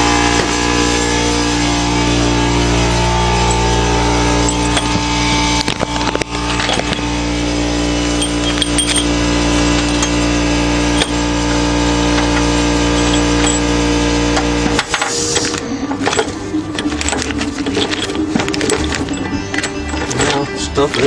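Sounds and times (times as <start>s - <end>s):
machine motor hum: 0.0s - 21.0s
tools clinking on metal: 4.4s - 5.0s, 5.6s - 7.1s, 8.2s - 10.3s, 10.9s - 11.3s, 12.2s - 13.7s, 15.4s - 21.0s.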